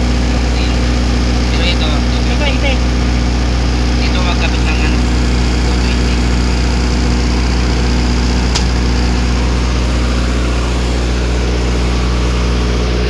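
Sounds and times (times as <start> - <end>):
diesel generator humming: 0.0 - 13.0
sharp click: 8.5 - 8.8.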